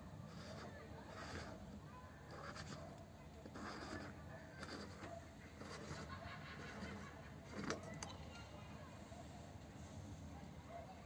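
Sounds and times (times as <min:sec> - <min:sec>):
faint scraping of parts: 0:00.2 - 0:08.4.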